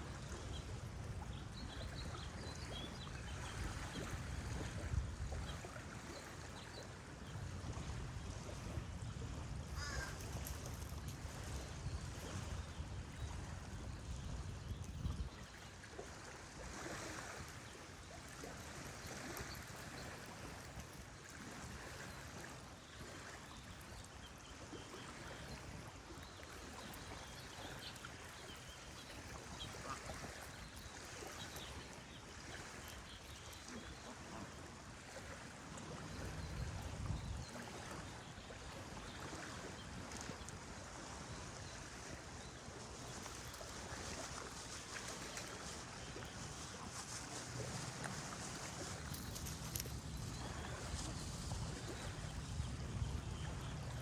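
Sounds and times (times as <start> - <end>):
faint bird calls: 9.8 - 10.7
stream water rushing: 37.6 - 54.0.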